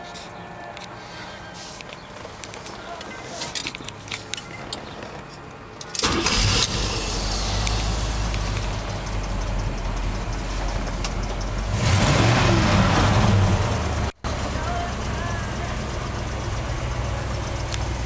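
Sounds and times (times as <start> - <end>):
engine starting and idling: 5.8 - 18.0.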